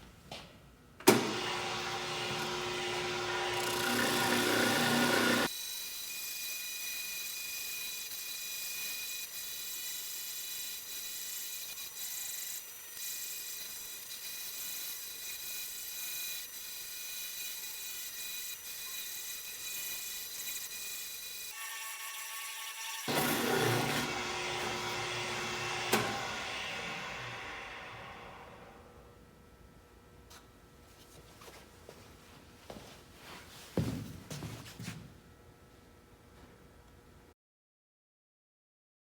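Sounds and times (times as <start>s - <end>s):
spindle sander running: 1.2s - 6.4s, 15.6s - 28.9s
wood being sanded: 1.8s - 5.5s.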